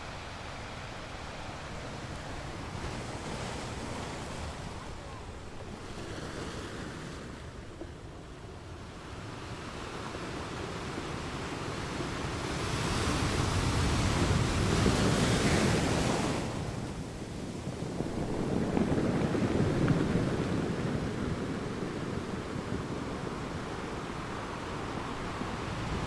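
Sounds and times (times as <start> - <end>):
ocean waves on a beach: 0.0 - 26.0.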